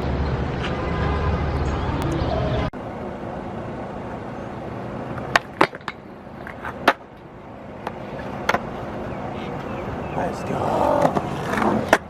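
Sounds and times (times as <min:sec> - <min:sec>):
skateboard wheels rolling on concrete: 0:00.0 - 0:12.0
skateboard clacking on ground: 0:05.1 - 0:09.7, 0:10.7 - 0:12.0.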